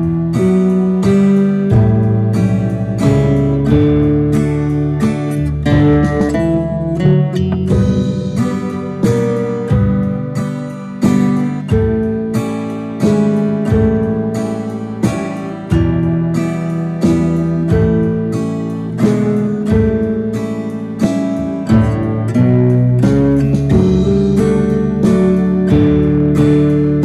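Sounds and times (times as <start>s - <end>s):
acoustic guitar strumming waltz: 0.0s - 27.0s.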